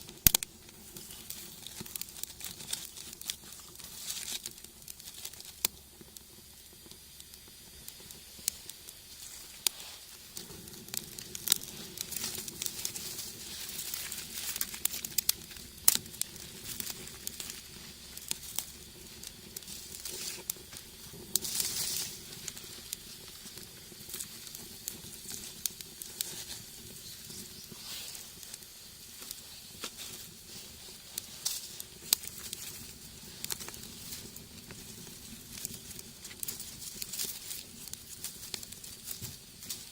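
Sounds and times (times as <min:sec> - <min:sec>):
wood fire crackling and popping: 0:00.0 - 0:39.9.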